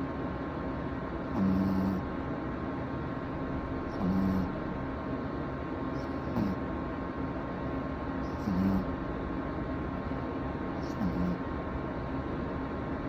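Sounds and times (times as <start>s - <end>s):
steady background hum: 0.0s - 13.0s
puppy snoring: 1.3s - 2.1s, 3.9s - 4.6s, 6.0s - 6.7s, 8.2s - 9.0s, 10.8s - 11.4s.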